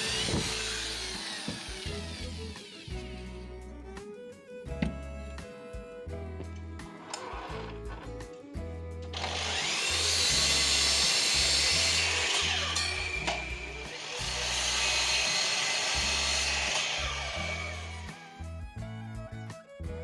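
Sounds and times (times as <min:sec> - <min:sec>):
power tool cutting wood: 0:00.0 - 0:03.5, 0:07.0 - 0:08.2, 0:09.1 - 0:18.4
background music: 0:00.0 - 0:20.0.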